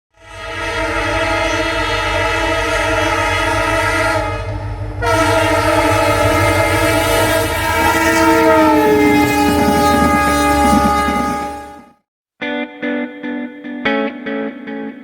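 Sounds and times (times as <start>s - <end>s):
locomotive horn chord: 0.1s - 12.0s
train rumble: 0.5s - 11.8s.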